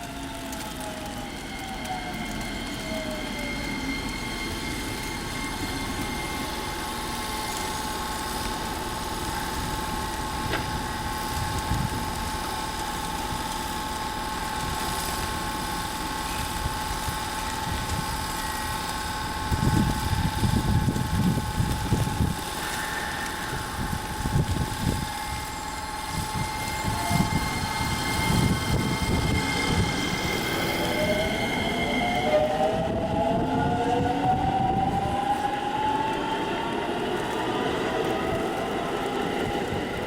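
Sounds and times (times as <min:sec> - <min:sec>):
train electrical whine and hum: 0:00.0 - 0:40.0
wind buffeting microphone: 0:09.1 - 0:12.4, 0:19.2 - 0:22.6, 0:23.3 - 0:40.0
falling motor inverter pitch: 0:16.5 - 0:40.0.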